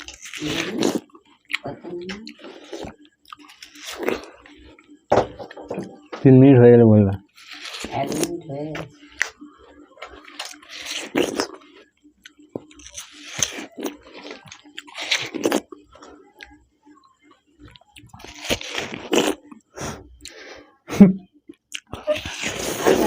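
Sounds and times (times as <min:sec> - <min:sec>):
watermelon crunching: 0:00.0 - 0:04.8, 0:07.1 - 0:16.5, 0:17.6 - 0:19.6, 0:21.7 - 0:23.0.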